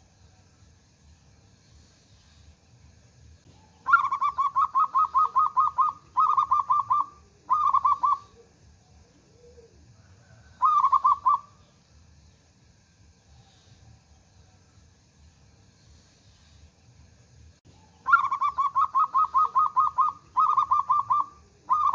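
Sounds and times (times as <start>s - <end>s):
dove cooing: 3.6s - 11.6s, 17.7s - 21.9s.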